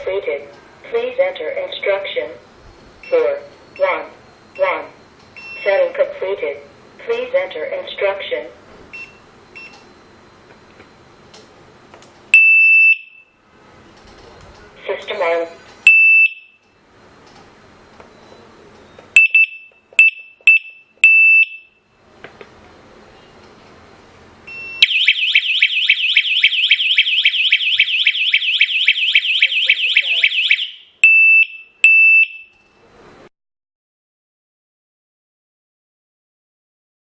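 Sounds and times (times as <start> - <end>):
electronic alarm tone pulsing: 24.5 - 32.5.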